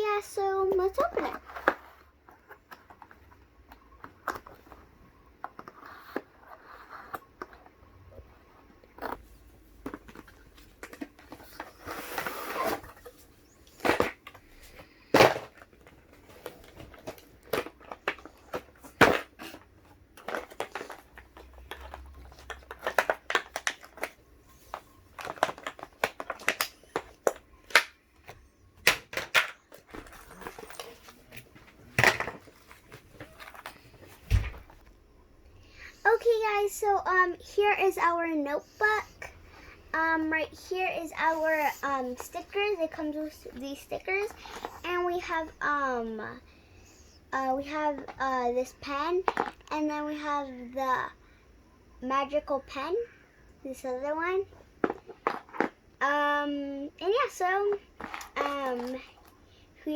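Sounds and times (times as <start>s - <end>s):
cardboard and plastic rustling: 0.1s - 34.9s, 49.2s - 49.7s, 54.4s - 55.9s, 57.1s - 59.9s
packaging clicks and taps: 20.2s - 30.9s.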